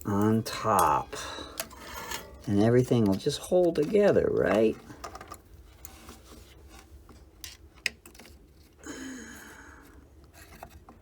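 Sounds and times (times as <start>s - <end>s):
wire scraps scraping: 0.0s - 8.6s.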